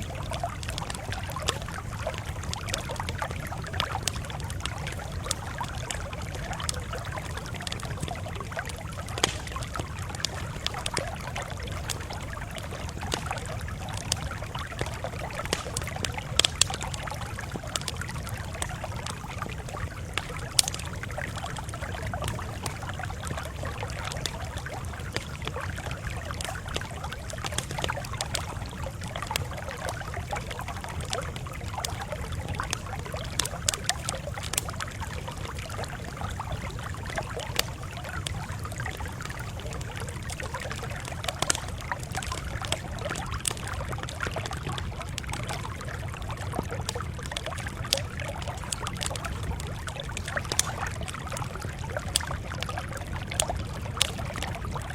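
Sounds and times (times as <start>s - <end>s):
campfire crackling and popping: 0.0s - 54.9s.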